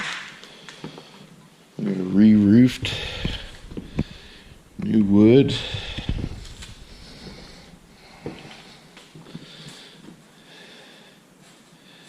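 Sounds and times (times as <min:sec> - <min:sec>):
faint breathing: 0:02.5 - 0:12.0.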